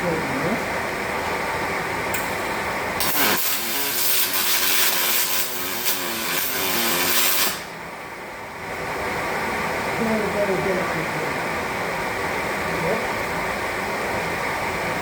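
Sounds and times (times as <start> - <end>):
welding arc crackling hiss: 2.1 - 7.8.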